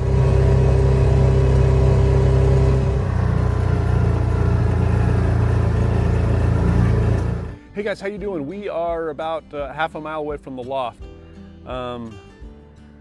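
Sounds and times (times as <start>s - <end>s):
road noise: 0.0s - 7.6s
vehicle engine running: 0.0s - 7.6s.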